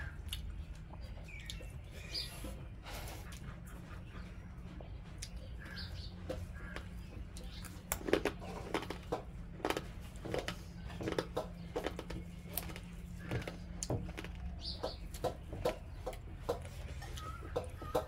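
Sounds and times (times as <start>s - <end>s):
low steady hum: 0.0s - 18.0s
wet chewing and lip-smacks: 0.0s - 18.0s
bird chirps: 11.0s - 18.0s.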